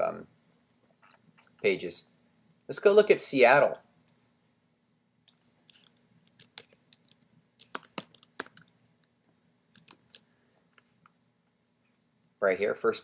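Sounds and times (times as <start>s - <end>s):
faint keyboard typing: 5.2s - 11.2s.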